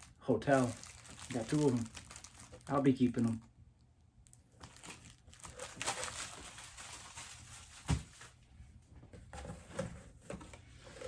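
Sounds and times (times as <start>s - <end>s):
packaging crinkling: 0.0s - 3.5s, 4.3s - 8.3s.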